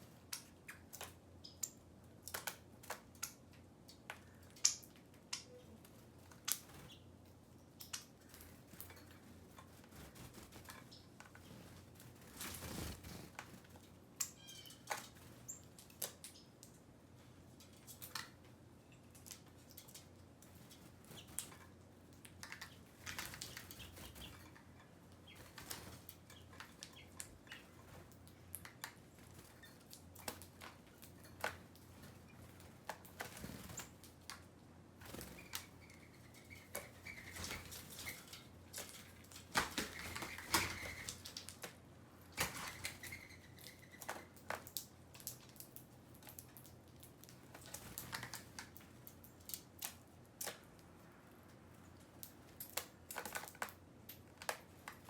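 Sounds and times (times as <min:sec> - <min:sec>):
birds pecking clicks: 0:00.2 - 0:05.6, 0:06.2 - 0:16.9, 0:17.5 - 0:41.8, 0:42.4 - 0:50.9, 0:52.1 - 0:55.0
wing flutters: 0:09.7 - 0:13.8, 0:35.0 - 0:41.4.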